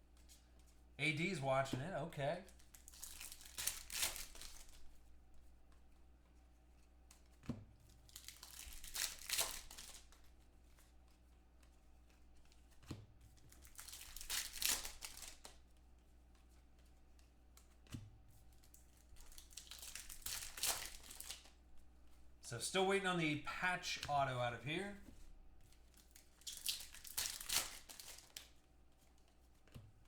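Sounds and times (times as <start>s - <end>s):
foil wrappers tearing and crinkling: 2.5s - 4.8s, 8.0s - 10.2s, 13.5s - 15.6s, 18.7s - 21.6s, 25.7s - 28.6s.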